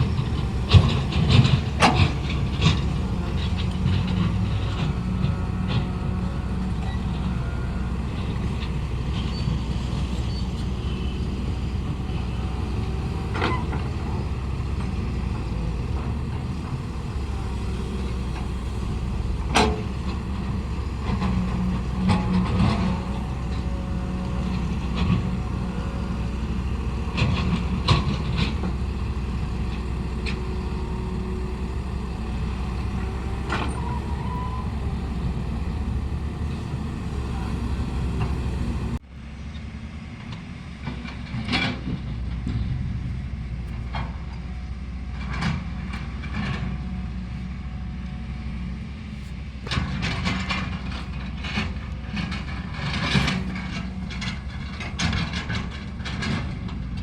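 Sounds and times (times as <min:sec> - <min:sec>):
vehicle engine running: 0:00.0 - 0:57.0.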